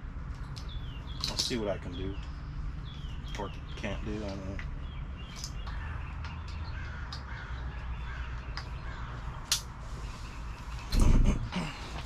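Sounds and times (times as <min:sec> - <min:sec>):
steady low rumble: 0:00.0 - 0:12.0
bird calls: 0:00.4 - 0:12.0
sharp click: 0:09.5 - 0:09.7.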